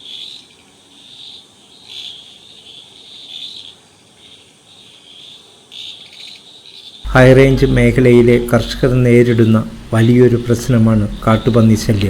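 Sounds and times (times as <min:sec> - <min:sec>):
high-pitched insects chirping: 0:00.0 - 0:12.0.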